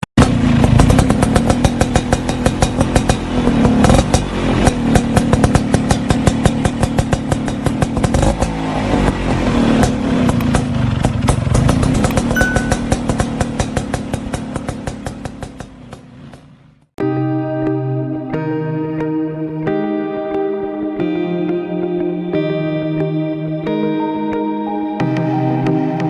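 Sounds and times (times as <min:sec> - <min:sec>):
motorcycle engine pulsing: 0:00.2 - 0:17.0.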